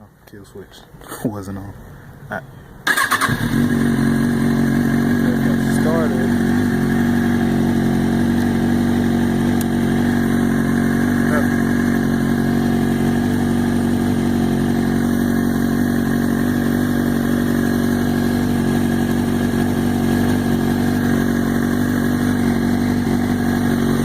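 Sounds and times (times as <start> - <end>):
motorcycle engine idling: 2.8 - 24.0.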